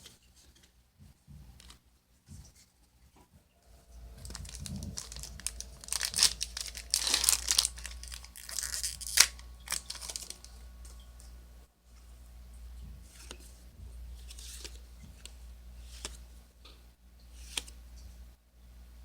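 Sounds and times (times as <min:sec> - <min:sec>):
foil pack tearing and crinkling: 0:04.2 - 0:10.5.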